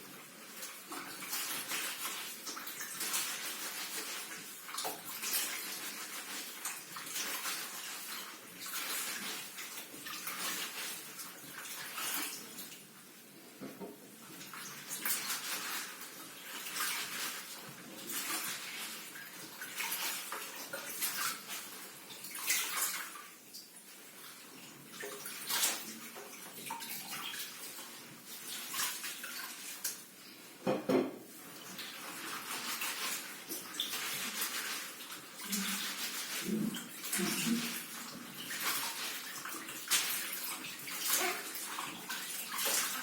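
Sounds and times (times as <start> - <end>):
vegetables washed in water: 0.0 - 13.3, 14.0 - 43.0
knock: 30.6 - 31.2.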